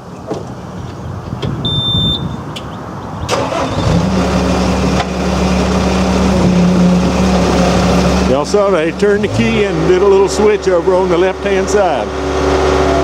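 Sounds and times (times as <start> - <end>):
short high beep: 1.6 - 2.4
diesel engine starting and idling: 2.9 - 13.0.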